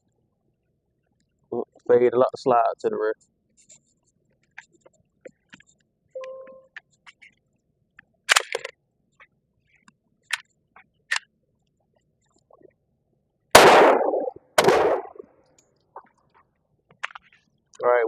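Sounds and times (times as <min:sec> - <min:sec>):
pistol shots with echo: 0:13.6 - 0:15.2.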